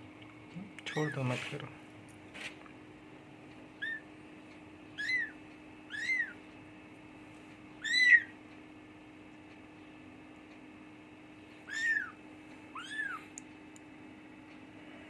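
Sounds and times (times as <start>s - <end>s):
kitten mewing: 5.0s - 6.4s, 11.7s - 13.4s.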